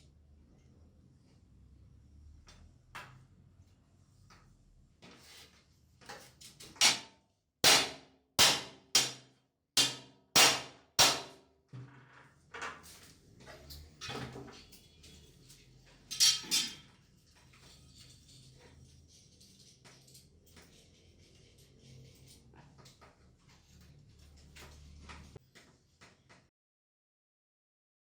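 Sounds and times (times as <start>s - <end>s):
hammer striking metal: 7.6s - 9.2s, 9.8s - 11.4s.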